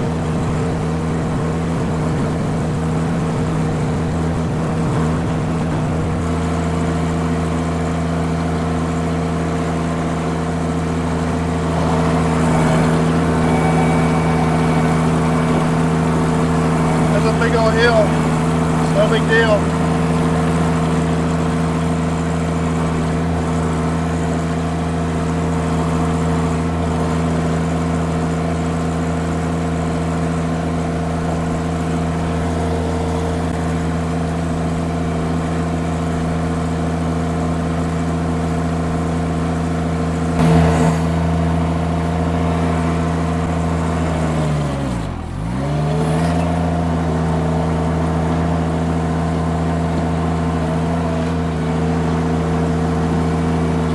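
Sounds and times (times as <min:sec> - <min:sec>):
skid steer engine running: 0:00.0 - 0:53.9.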